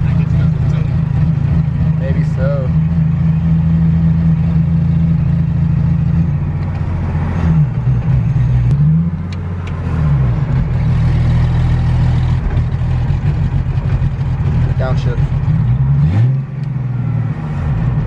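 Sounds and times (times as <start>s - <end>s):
car engine revving from inside: 15.3s - 18.0s.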